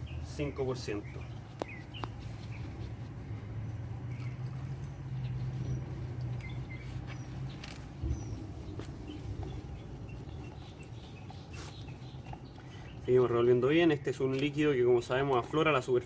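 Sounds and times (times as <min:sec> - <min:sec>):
bird chirps: 0:00.0 - 0:02.8, 0:04.1 - 0:14.6.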